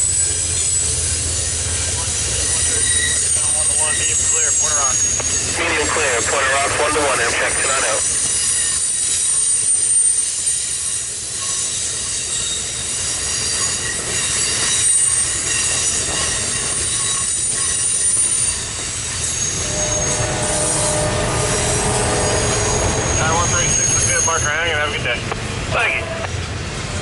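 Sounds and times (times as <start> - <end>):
train wheels squealing: 0.0 - 25.2
train cars rumbling on rail: 0.0 - 27.0
low tone: 19.4 - 24.4.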